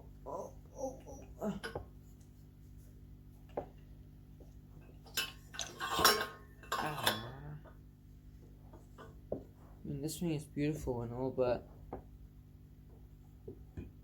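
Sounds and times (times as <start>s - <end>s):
metal parts clinking and clattering: 5.1s - 7.3s.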